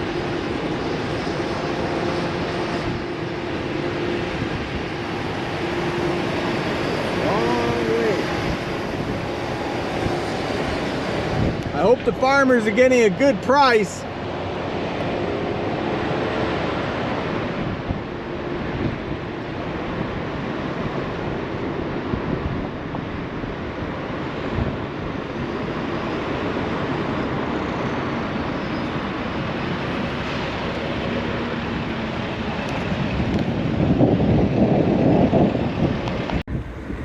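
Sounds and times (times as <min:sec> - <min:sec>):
wind buffeting microphone: 0:00.0 - 0:13.4, 0:14.0 - 0:37.0
low vehicle engine rumble: 0:36.5 - 0:37.0.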